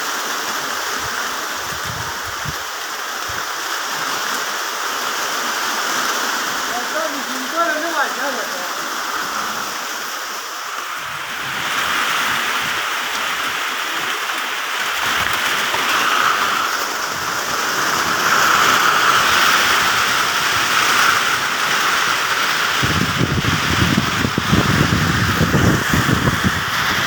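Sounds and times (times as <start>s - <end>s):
rain falling on leaves: 0.0s - 27.0s.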